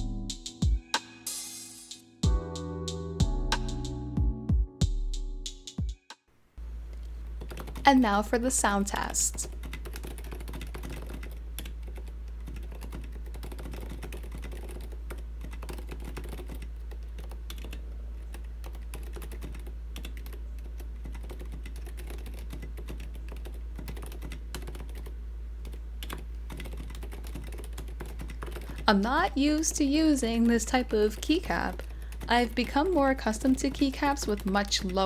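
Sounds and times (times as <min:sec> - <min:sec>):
soft keyboard typing: 0:07.3 - 0:35.0.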